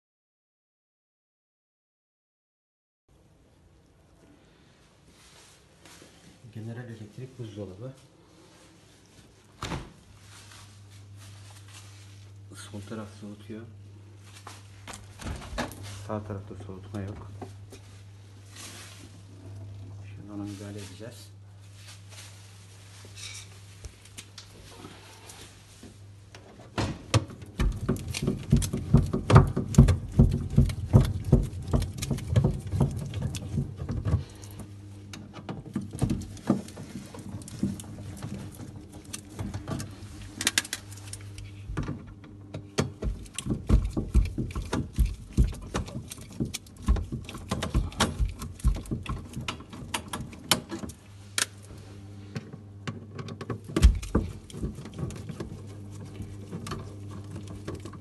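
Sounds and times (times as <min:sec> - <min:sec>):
steady low hum: 0:03.5 - 0:58.0
refrigerator parts rattling: 0:26.4 - 0:51.1, 0:52.9 - 0:58.0.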